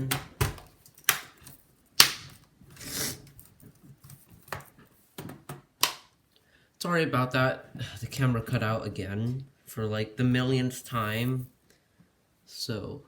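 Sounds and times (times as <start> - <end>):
plastic clips snapping: 0.0 - 2.4.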